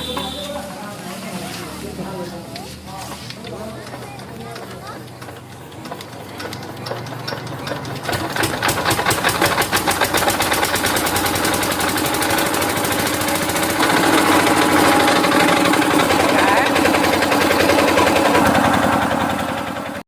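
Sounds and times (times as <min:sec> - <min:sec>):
small motor clattering: 0:00.0 - 0:20.0.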